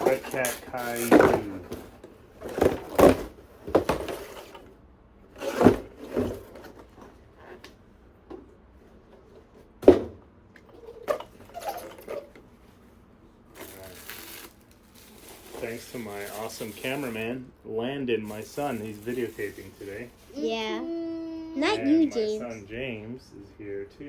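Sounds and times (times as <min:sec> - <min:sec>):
packaging rustling: 0:13.6 - 0:17.3, 0:18.3 - 0:20.4.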